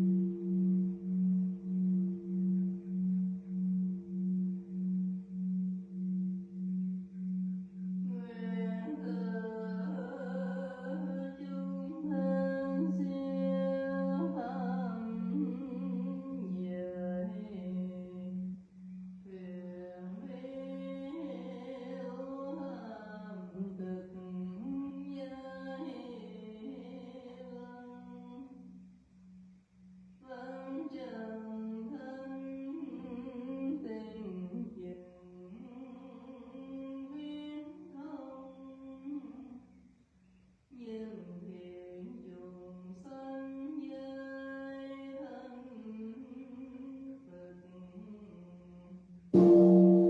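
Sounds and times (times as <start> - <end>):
pulsing low hum: 0.0 - 11.3, 49.4 - 50.0
person chanting: 0.0 - 18.6.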